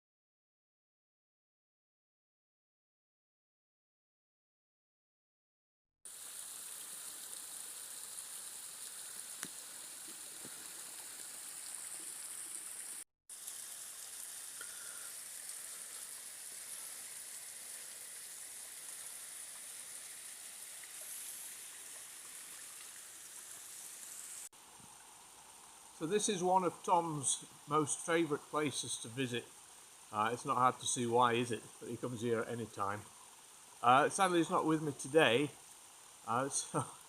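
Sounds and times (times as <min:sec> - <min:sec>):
waterfall splashing: 0:06.1 - 0:24.5.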